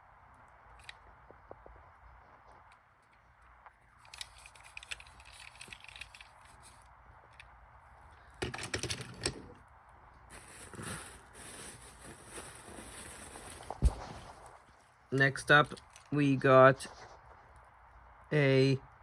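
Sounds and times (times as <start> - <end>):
plastic toy trains clicking: 4.0 - 7.5, 8.2 - 9.6.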